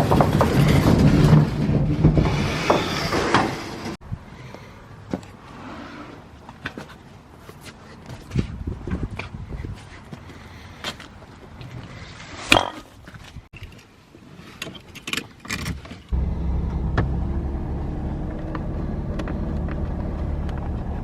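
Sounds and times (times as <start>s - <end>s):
car engine idling: 16.2s - 21.0s.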